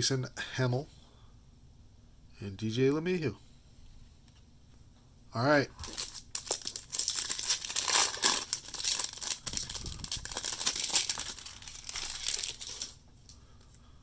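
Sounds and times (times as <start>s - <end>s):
plastic wrapper tearing and crinkling: 5.8s - 13.0s.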